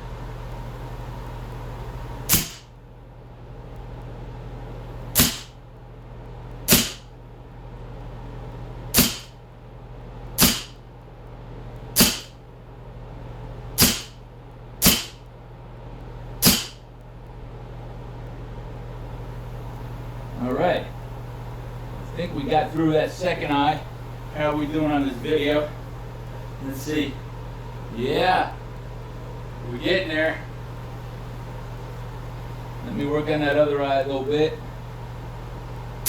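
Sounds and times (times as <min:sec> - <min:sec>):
steady low hum: 0:00.0 - 0:36.0
air pistol shots: 0:02.3 - 0:02.7, 0:05.2 - 0:05.6, 0:06.7 - 0:07.1, 0:08.9 - 0:09.4, 0:10.4 - 0:10.8, 0:12.0 - 0:12.4, 0:13.8 - 0:14.2, 0:14.8 - 0:15.3, 0:16.4 - 0:16.8.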